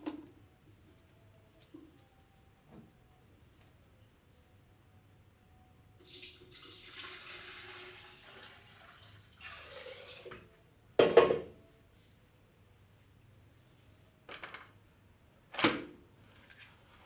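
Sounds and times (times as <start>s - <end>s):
water pouring: 6.0s - 10.4s.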